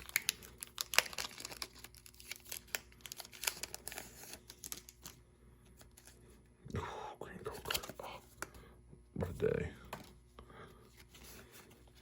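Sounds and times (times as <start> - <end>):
foil wrapper crinkling: 0.0 - 5.2.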